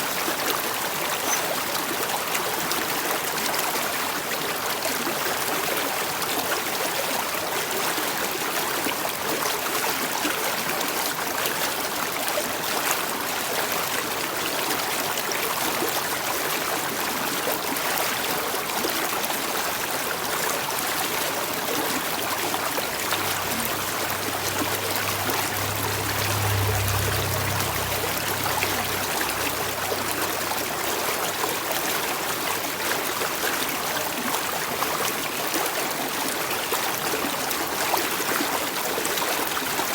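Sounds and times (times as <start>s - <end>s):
water trickling: 13.4s - 39.9s
low hum: 21.8s - 32.6s.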